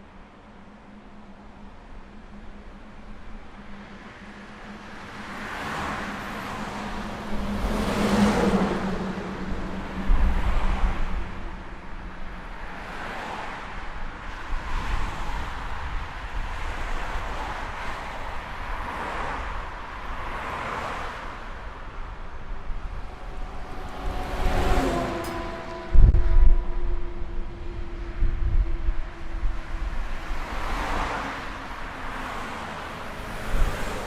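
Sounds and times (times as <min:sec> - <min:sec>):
cars passing: 0:00.0 - 0:34.0
low engine hum: 0:21.4 - 0:34.0.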